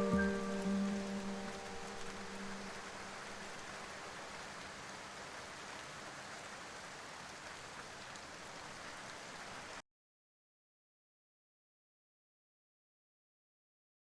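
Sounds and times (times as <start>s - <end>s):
steady rain: 0.0s - 9.8s.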